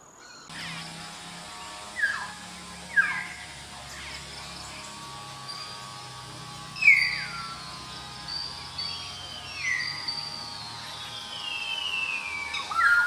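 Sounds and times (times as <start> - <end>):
high whistled bird notes: 5.5 - 13.0.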